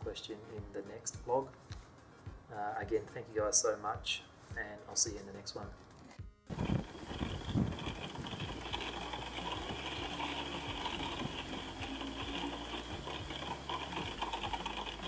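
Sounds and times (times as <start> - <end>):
machine low hum: 6.5 - 15.0
rapid ticking: 6.5 - 15.0.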